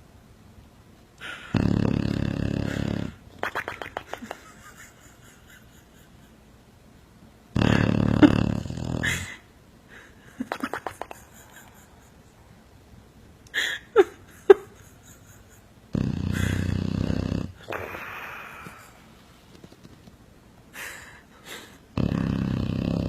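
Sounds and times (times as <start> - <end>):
dog snoring: 1.3 - 3.2, 7.5 - 9.4, 15.9 - 18.5, 21.9 - 23.0.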